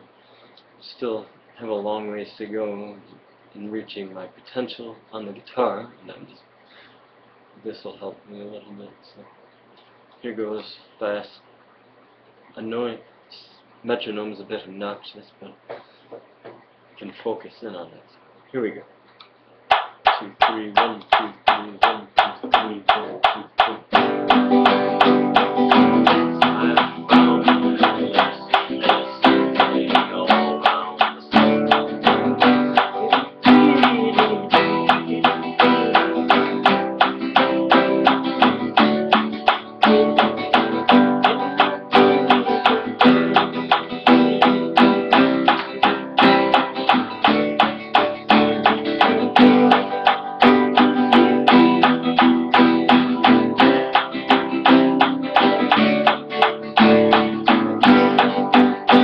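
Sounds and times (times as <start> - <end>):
pick clicking on strings: 19.2 - 59.0
guitar strummed with a pick: 19.7 - 59.0.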